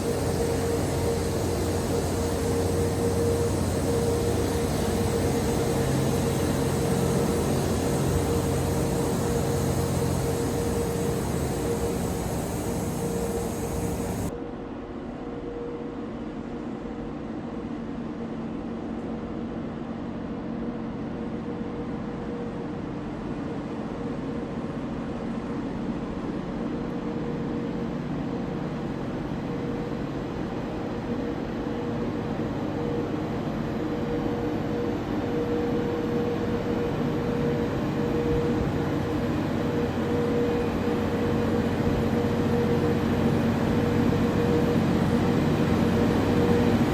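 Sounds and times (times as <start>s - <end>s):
train running with steady hum: 0.0s - 46.9s.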